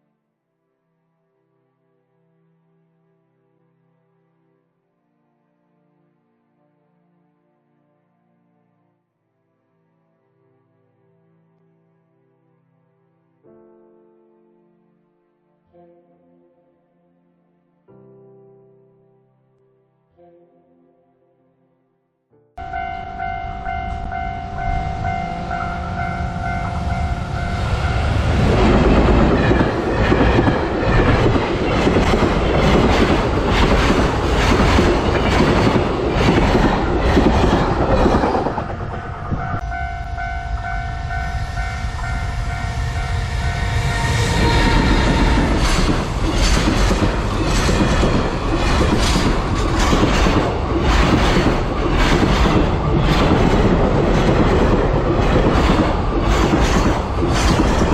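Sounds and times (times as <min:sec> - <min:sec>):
level crossing warning bell: 0:22.6 - 0:28.4, 0:39.1 - 0:44.3
train wheels clattering: 0:26.6 - 0:39.1, 0:43.1 - 0:57.9.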